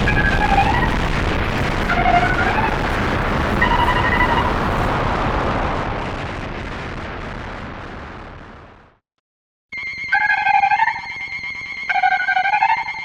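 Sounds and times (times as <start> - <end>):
explosion rumble: 0.0 - 9.0.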